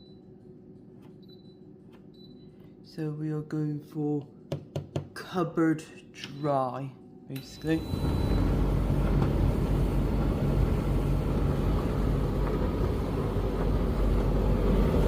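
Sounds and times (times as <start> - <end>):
tumble dryer rumbling: 7.6 - 15.0.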